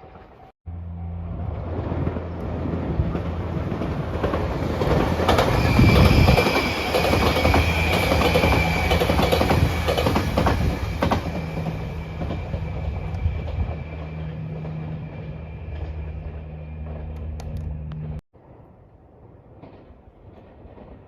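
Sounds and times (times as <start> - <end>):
train wheels clacking over rails: 2.0 - 17.3
thin steady squeal: 5.4 - 17.2.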